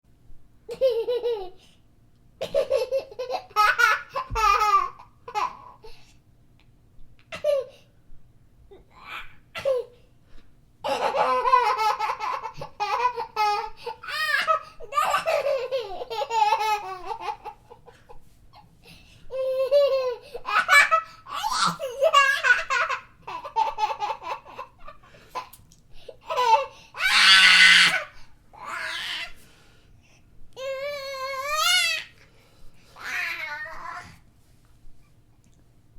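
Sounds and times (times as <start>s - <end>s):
baby laughing: 0.7s - 1.6s, 2.4s - 5.9s, 10.8s - 18.7s, 19.3s - 25.6s, 26.2s - 29.3s.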